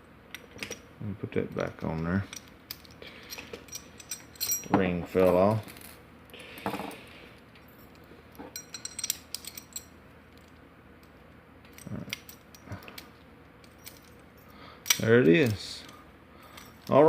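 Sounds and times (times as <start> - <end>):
metal lock parts clicking: 8.5 - 10.5.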